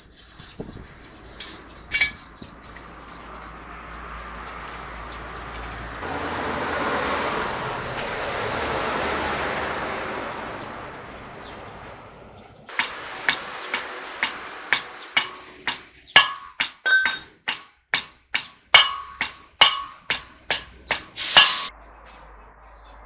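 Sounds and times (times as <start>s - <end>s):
hammer blows on metal: 12.7s - 21.7s.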